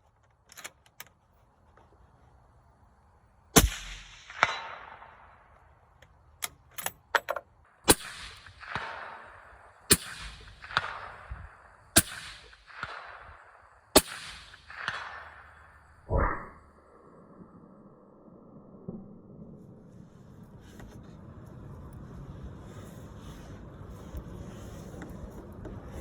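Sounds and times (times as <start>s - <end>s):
rifle shots: 3.6s - 5.4s, 7.8s - 15.8s.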